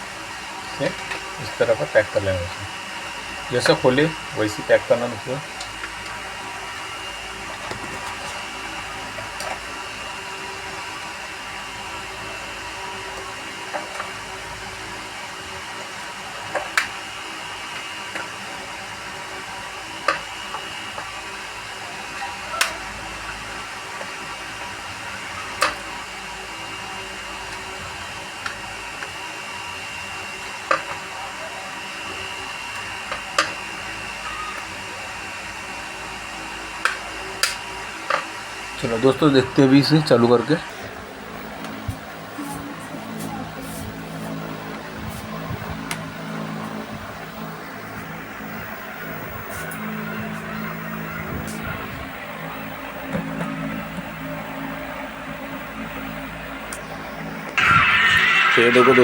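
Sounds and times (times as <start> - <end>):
steady background whir: 0.0 - 59.0.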